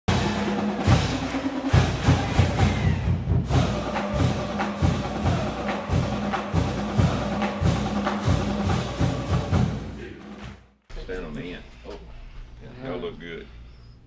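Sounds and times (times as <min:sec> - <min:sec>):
music with driving percussion beat: 0:00.1 - 0:10.7.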